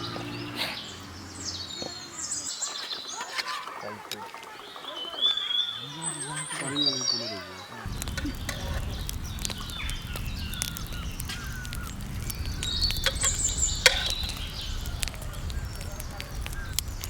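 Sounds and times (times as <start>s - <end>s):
birds chirping and calling: 0.0s - 17.0s
low steady rumble: 7.9s - 17.0s
sharp clicks: 7.9s - 17.0s.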